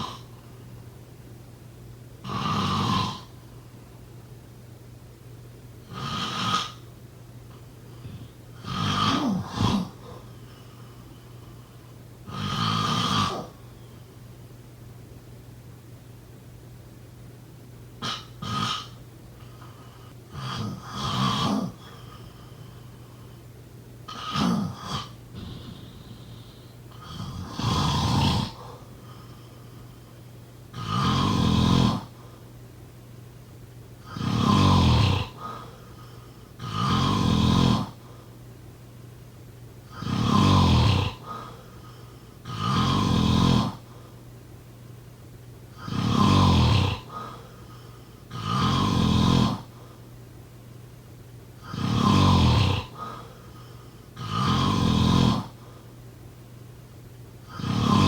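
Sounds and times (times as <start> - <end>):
person snoring loudly: 0.0 - 0.3, 2.2 - 3.4, 5.9 - 6.8, 8.0 - 10.3, 12.3 - 13.6, 18.0 - 19.0, 19.6 - 22.3, 24.1 - 28.9, 30.7 - 32.2, 34.0 - 35.8, 36.6 - 38.0, 39.9 - 43.9, 45.8 - 47.7, 48.3 - 49.8, 51.6 - 53.6, 54.2 - 55.6, 57.5 - 58.0
quiet breathing: 0.0 - 1.0, 3.2 - 4.3, 6.6 - 14.6, 18.1 - 33.3, 34.0 - 45.1, 45.7 - 56.3.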